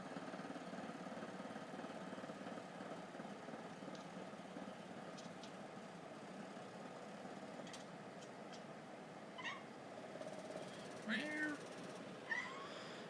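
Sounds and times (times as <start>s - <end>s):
cat chirp: 9.4s - 9.7s, 12.3s - 12.8s
cat making pulsing rattle: 9.4s - 12.8s.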